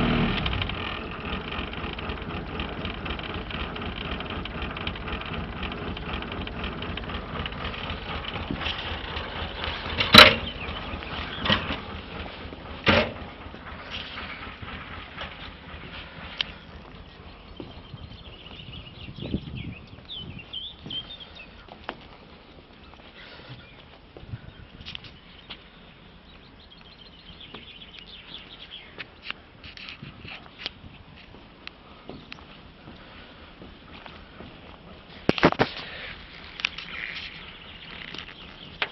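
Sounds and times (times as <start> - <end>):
small birds chirping: 5.1 - 38.9
sharp knocks: 10.0 - 10.5.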